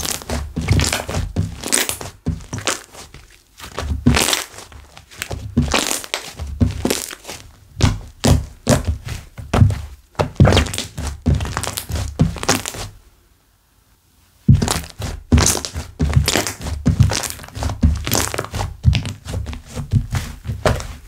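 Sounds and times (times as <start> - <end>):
slime squelching by hand: 0.0 - 12.9.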